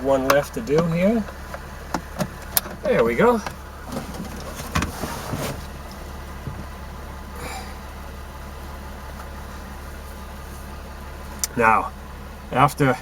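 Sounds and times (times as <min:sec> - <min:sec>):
low background hum: 0:00.0 - 0:13.0
handling noises of tools: 0:00.7 - 0:05.8
soft rustle: 0:03.9 - 0:06.0.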